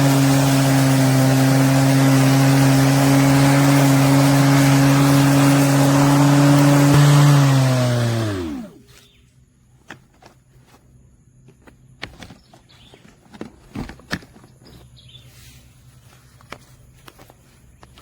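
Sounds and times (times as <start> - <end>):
electric lawn mower spinning down: 0.0 - 8.9.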